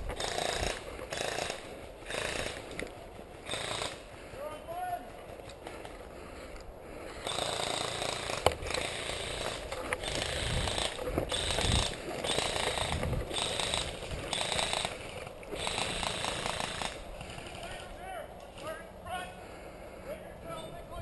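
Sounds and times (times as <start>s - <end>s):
airsoft gun full-auto bursts: 0.1s - 2.7s, 3.4s - 4.1s, 7.2s - 17.7s.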